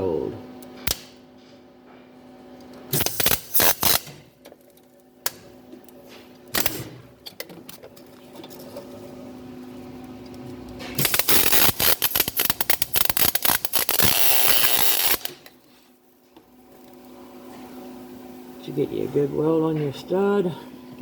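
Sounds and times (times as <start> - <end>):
welder crackling: 2.9 - 4.3, 11.0 - 15.5.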